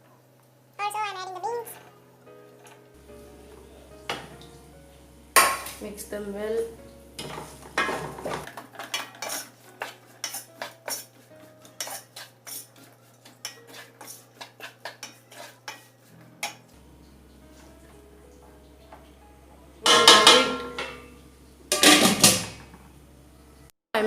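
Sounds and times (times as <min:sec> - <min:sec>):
spoon clinking against pan: 0:05.4 - 0:05.8, 0:19.8 - 0:21.1.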